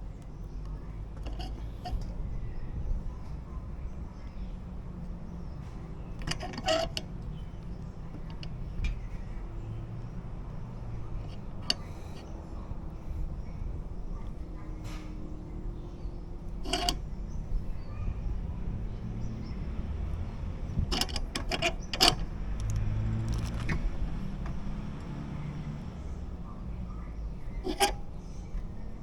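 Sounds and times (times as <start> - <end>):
hand tools clicking and knocking: 6.2 - 7.1, 8.1 - 8.9, 16.6 - 17.0, 20.9 - 23.9, 27.6 - 28.0.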